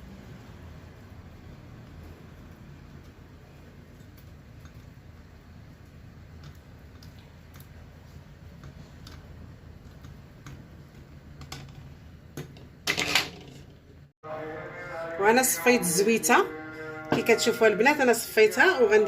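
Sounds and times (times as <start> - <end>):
oil dripping through a strainer: 0.0 - 11.4.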